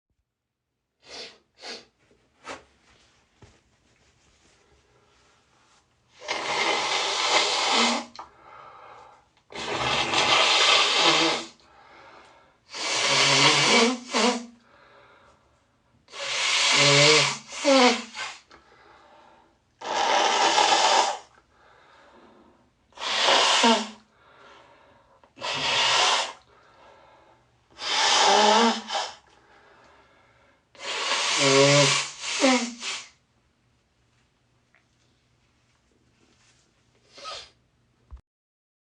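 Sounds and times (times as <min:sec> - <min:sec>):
person blowing nose: 0:01.0 - 0:02.7, 0:06.2 - 0:08.2, 0:09.5 - 0:11.6, 0:12.7 - 0:14.6, 0:16.1 - 0:18.5, 0:19.8 - 0:21.4, 0:23.0 - 0:24.0, 0:25.4 - 0:26.5, 0:27.7 - 0:29.3, 0:30.8 - 0:33.2, 0:37.0 - 0:37.6.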